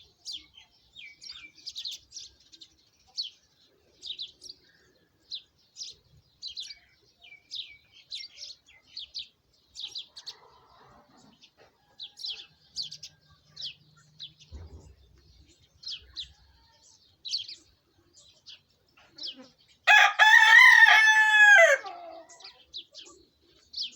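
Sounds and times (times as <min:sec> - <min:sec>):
birds chirping: 0:00.0 - 0:23.9
rooster crowing: 0:19.9 - 0:22.4.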